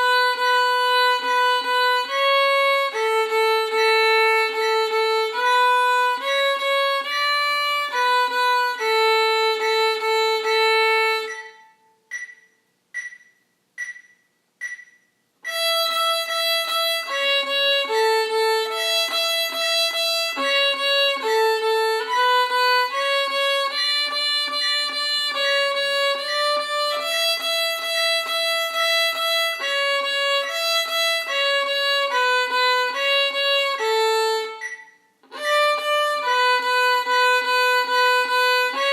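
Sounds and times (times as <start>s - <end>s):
violin melody: 0.0s - 11.8s, 15.5s - 38.9s
metronome clicks: 11.2s - 15.7s, 34.6s - 35.1s.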